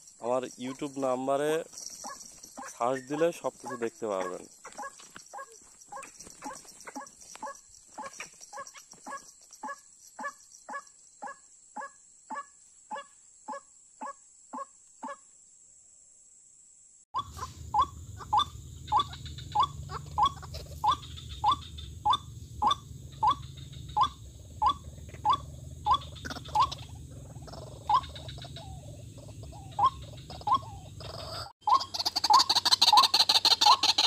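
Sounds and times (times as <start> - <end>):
steady low hum: 17.2 - 31.3
bird calling rising notes: 17.2 - 34.0.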